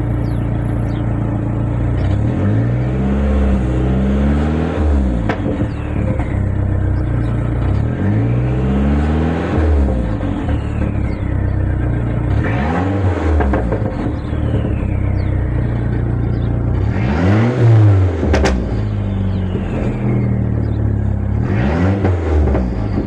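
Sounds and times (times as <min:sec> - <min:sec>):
car engine idling: 0:00.0 - 0:23.0
car engine revving: 0:00.0 - 0:23.0
high whistle sliding down: 0:19.4 - 0:20.5.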